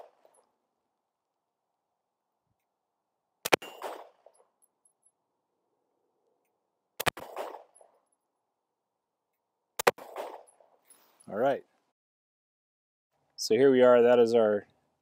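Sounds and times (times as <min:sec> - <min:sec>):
pistol shots with echo: 0:03.4 - 0:04.3, 0:07.0 - 0:07.8.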